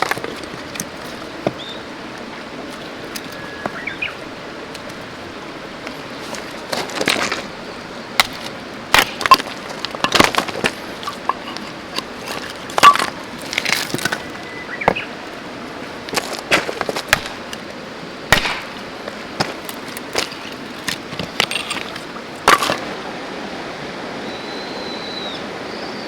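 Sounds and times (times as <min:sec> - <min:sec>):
wood cracking and snapping: 0:08.2 - 0:14.3, 0:18.3 - 0:18.7.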